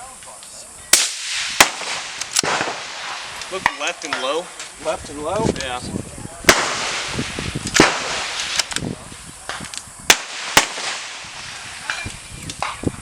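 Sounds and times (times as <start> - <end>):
suppressed rifle shots: 1.0 - 4.3, 6.5 - 8.8, 9.5 - 11.5.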